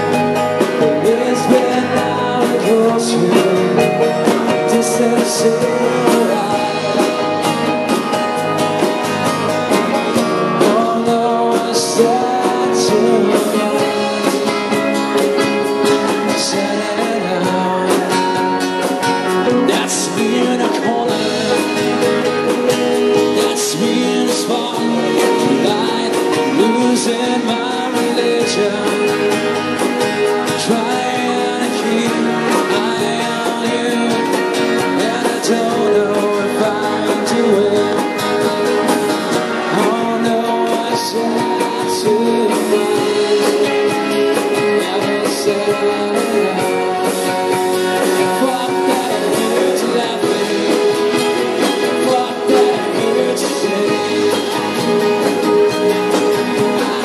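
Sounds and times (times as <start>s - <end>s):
band playing: 0.0s - 57.0s
guitar: 0.0s - 57.0s
person singing: 0.0s - 57.0s.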